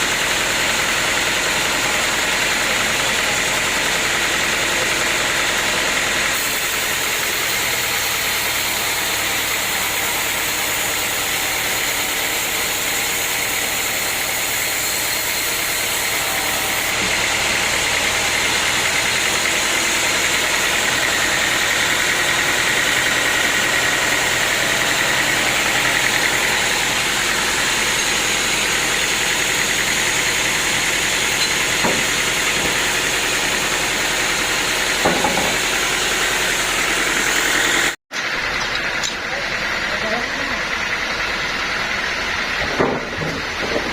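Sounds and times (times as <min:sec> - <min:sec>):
sawmill machinery drone: 0:00.0 - 0:43.9.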